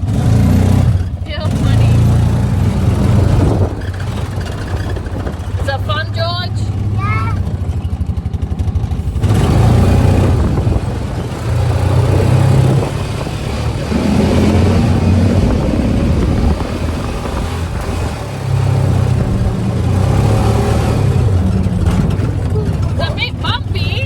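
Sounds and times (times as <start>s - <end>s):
farm buggy engine running: 0.0s - 24.0s
broad rushing noise: 8.9s - 24.0s.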